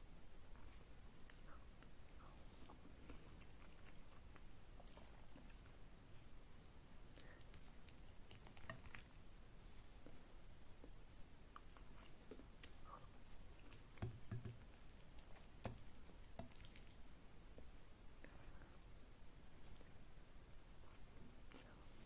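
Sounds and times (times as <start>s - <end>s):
wet chewing of noodles: 0.4s - 17.8s.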